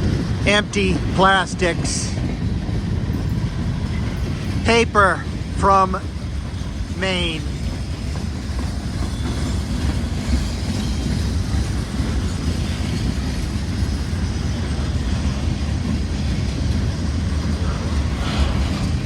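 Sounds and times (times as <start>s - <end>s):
train wheels rumbling on rail: 0.0s - 19.0s.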